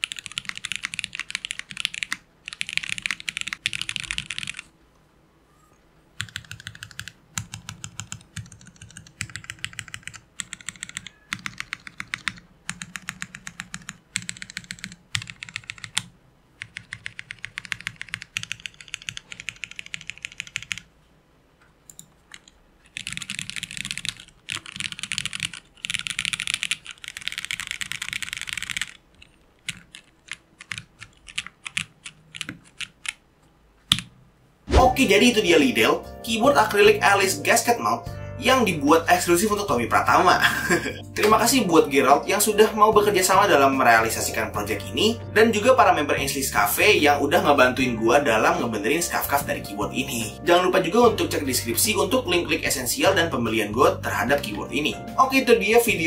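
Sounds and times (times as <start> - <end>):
mechanical keyboard typing: 0.0 - 4.7, 6.2 - 20.9, 21.9 - 33.2.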